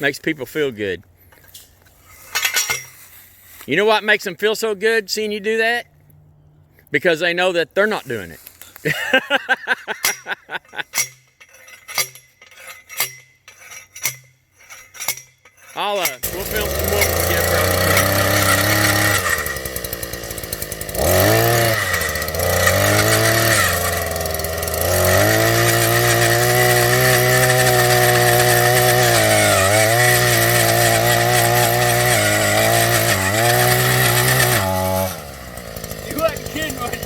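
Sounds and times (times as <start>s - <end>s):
small petrol engine revving: 16.2s - 37.0s.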